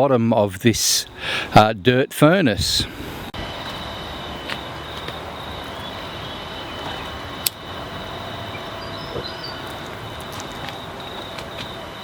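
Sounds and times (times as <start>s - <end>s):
faint high whine: 0.0s - 12.0s
sharp clicks: 7.4s - 7.6s.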